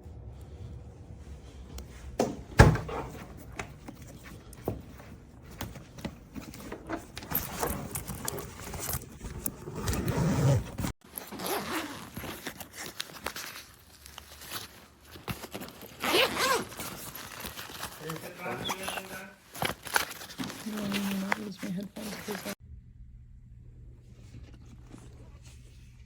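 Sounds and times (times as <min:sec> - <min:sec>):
bag fabric rustling: 0:03.1 - 0:22.6
backpack zippers opening and closing: 0:07.2 - 0:12.9, 0:15.4 - 0:17.4.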